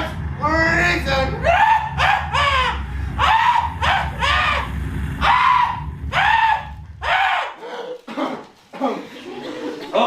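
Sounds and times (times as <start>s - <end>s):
low rumble: 0.0s - 7.5s
person shrieking: 1.4s - 8.0s.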